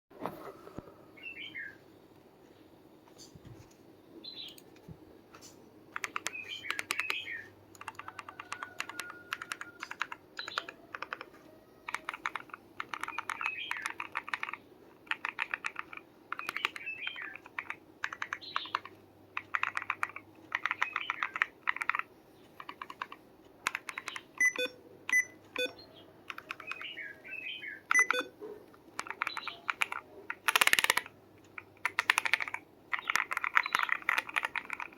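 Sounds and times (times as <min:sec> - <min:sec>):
mechanical keyboard typing: 0:05.9 - 0:27.0, 0:27.9 - 0:28.3, 0:28.9 - 0:34.9.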